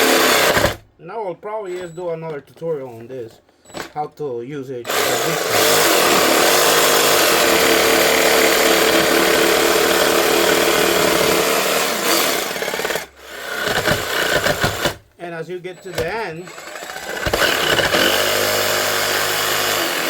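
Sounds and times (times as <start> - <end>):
jigsaw cutting wood: 0.0 - 0.8, 4.9 - 15.0, 15.9 - 20.0.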